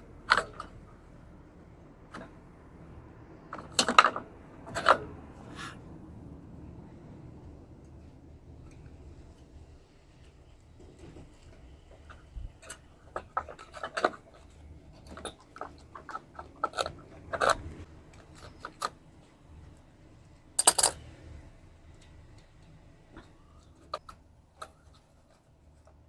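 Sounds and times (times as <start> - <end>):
metallic clicks and clinks: 20.6 - 21.0
short metal rattle: 20.6 - 21.0.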